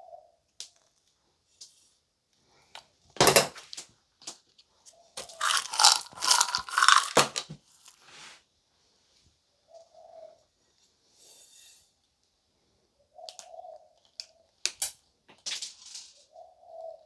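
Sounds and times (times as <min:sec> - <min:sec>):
packaging crackly rustling: 0:05.2 - 0:07.4
biscuit crumbs crunching: 0:05.2 - 0:07.5.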